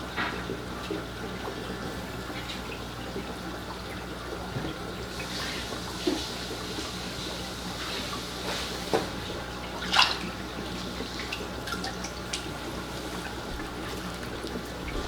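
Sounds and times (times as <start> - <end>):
water trickling: 0.0 - 15.0
small water splashes: 4.3 - 15.0.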